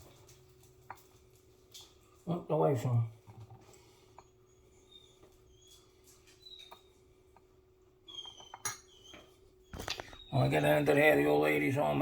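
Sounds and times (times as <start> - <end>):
faint high-pitched squeaks: 4.2 - 7.1, 8.0 - 10.6.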